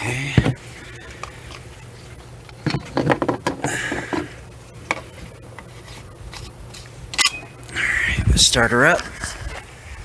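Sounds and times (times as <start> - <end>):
knocks and clatters of handling: 2.6 - 4.3.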